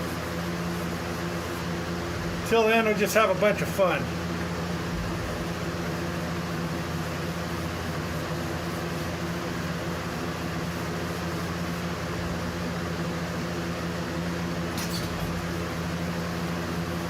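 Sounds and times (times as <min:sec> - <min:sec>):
electric fan humming: 0:00.0 - 0:17.0.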